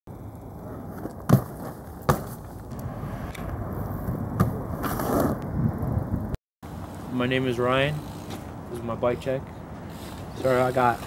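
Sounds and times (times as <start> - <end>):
wind buffeting microphone: 2.7 - 6.4.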